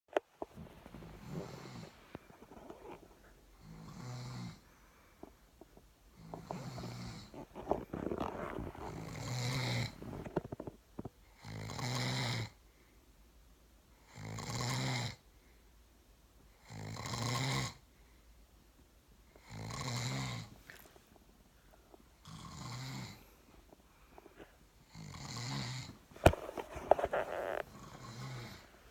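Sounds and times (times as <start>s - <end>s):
man snoring: 1.2s - 2.0s, 3.6s - 4.6s, 6.2s - 10.4s, 11.4s - 12.6s, 14.1s - 15.2s, 16.6s - 17.8s, 19.4s - 20.5s, 22.2s - 23.3s, 24.9s - 26.4s, 27.1s - 28.7s.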